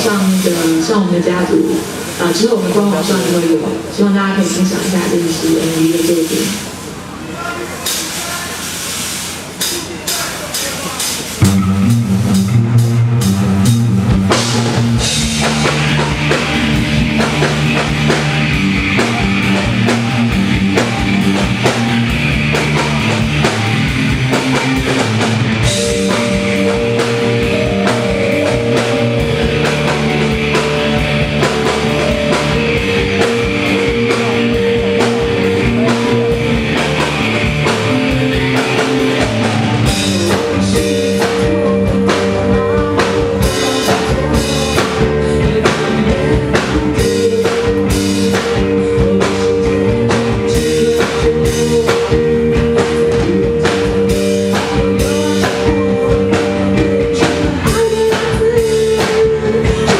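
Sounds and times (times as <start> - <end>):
bass: 0.0 - 59.9
drum kit beat: 4.4 - 59.9
keyboard: 9.4 - 59.9
held notes: 9.6 - 59.9.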